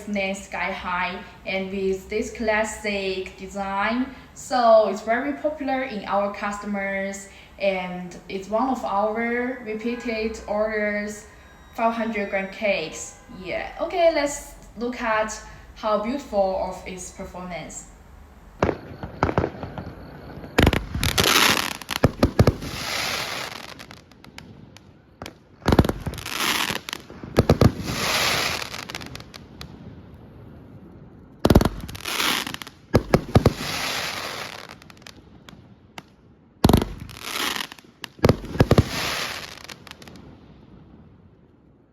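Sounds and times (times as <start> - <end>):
firework launch reports: 0.0 - 17.9, 18.6 - 24.1, 25.7 - 29.4, 31.5 - 34.8, 36.6 - 40.1
firework shells crackling: 18.6 - 29.8, 31.4 - 40.3.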